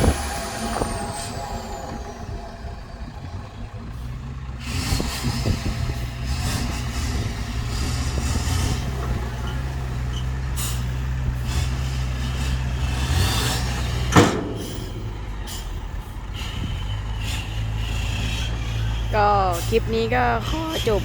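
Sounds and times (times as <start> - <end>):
diesel truck engine running: 0.0 - 21.0.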